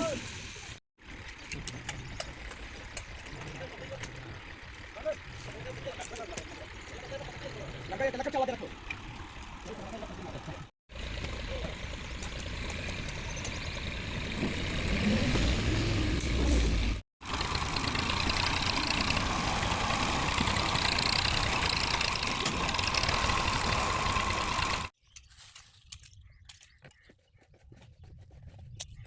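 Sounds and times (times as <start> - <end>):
chainsaw engine running: 17.2 - 24.9.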